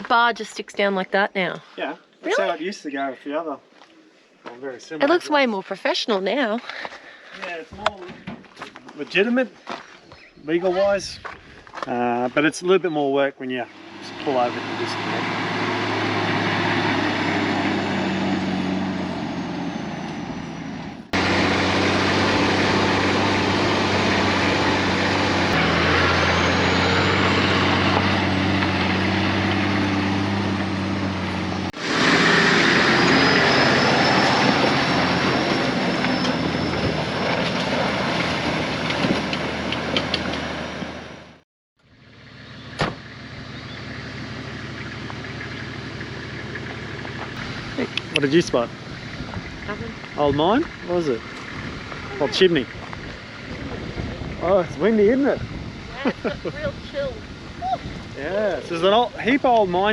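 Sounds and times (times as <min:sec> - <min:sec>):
engine hum while driving: 0:13.7 - 0:59.9.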